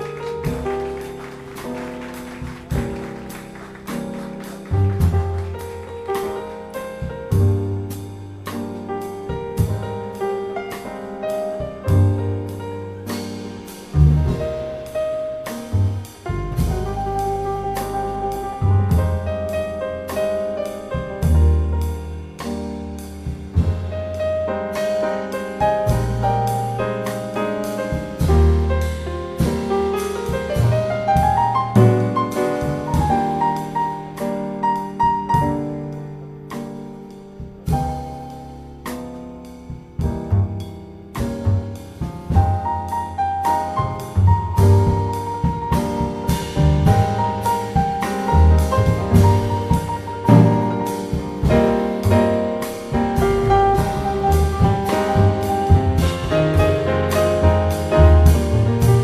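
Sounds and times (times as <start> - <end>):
bass notes: 0.0 - 59.0
piano: 0.0 - 59.0.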